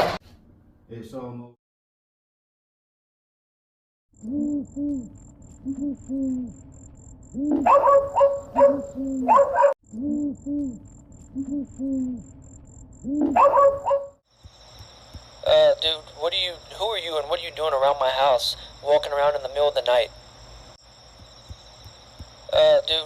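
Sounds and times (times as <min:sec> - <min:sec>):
owl high calls: 0:04.2 - 0:06.6, 0:07.3 - 0:12.3, 0:13.0 - 0:14.2
owl hooting: 0:04.2 - 0:12.4, 0:13.0 - 0:16.1.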